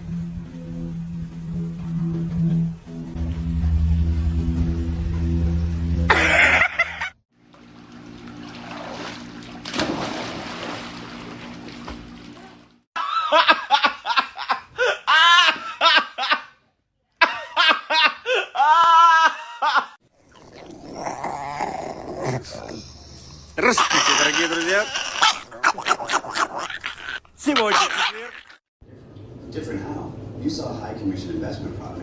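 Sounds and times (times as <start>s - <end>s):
low hum: 0.0s - 12.8s
person laughing hard: 6.1s - 7.2s, 13.0s - 16.6s, 17.2s - 20.0s, 23.6s - 28.6s.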